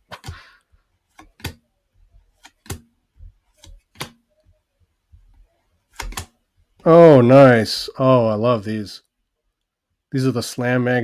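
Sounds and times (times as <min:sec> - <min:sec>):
cards snapping: 0:00.1 - 0:00.5, 0:01.1 - 0:01.6, 0:02.4 - 0:02.9, 0:03.5 - 0:04.2, 0:05.9 - 0:06.4.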